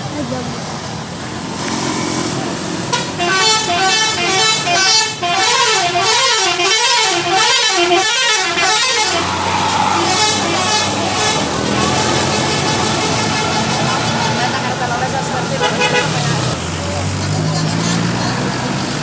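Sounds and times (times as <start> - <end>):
bus engine running: 0.0 - 19.0
musical air horn warbling tune: 2.9 - 14.8, 15.6 - 16.6.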